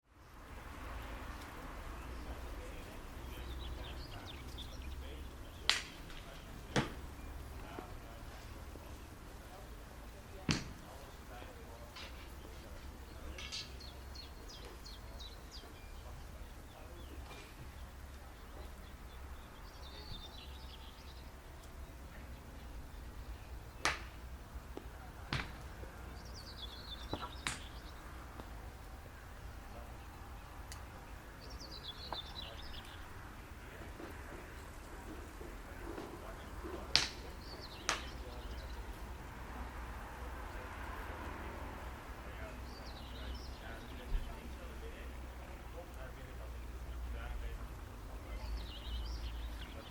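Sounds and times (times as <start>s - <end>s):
birds chirping: 0.1s - 49.9s
sharp smacks: 5.6s - 7.0s, 10.5s - 10.9s, 23.8s - 24.2s, 24.8s - 25.7s, 27.1s - 27.8s, 36.9s - 38.2s
faint bird chirps: 13.2s - 23.8s.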